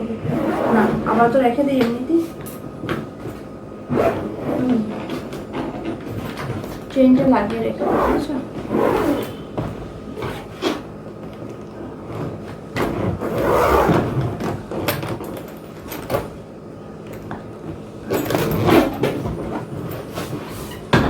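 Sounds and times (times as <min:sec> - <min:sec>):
suitcase zipper rasping: 0:00.2 - 0:01.2, 0:03.2 - 0:06.9, 0:07.7 - 0:09.5, 0:10.2 - 0:10.9, 0:11.8 - 0:15.4, 0:18.1 - 0:20.9.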